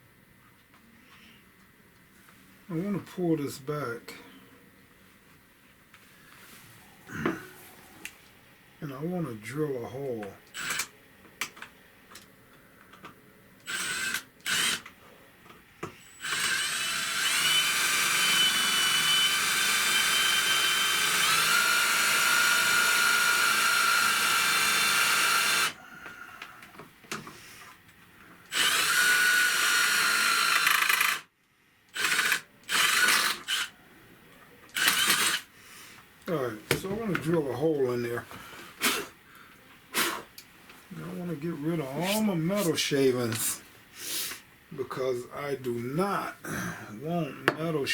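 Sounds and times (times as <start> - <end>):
electric drill boring through metal: 10.5 - 10.9, 13.6 - 14.8, 16.1 - 25.8, 28.5 - 31.3, 31.9 - 33.7, 34.8 - 35.5.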